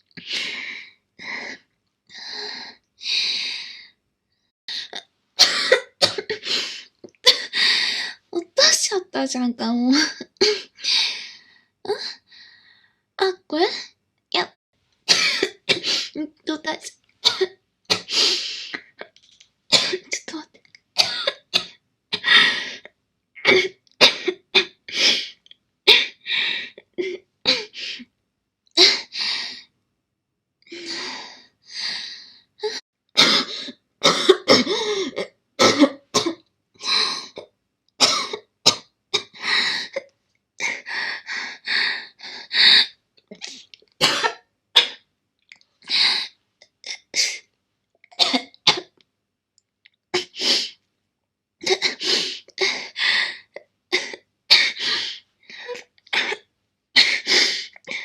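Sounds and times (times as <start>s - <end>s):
girl coughing hard: 4.9s - 6.4s, 15.1s - 16.2s, 17.2s - 18.2s, 19.7s - 20.4s, 21.0s - 22.5s, 23.4s - 24.9s, 33.2s - 37.4s, 38.0s - 39.4s, 44.0s - 45.0s, 48.2s - 48.9s.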